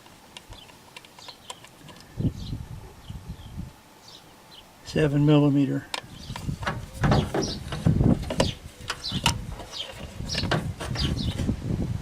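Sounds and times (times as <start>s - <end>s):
bird chirps: 0.5s - 4.7s, 8.4s - 11.4s
tools and parts knocking and clinking: 5.9s - 11.2s.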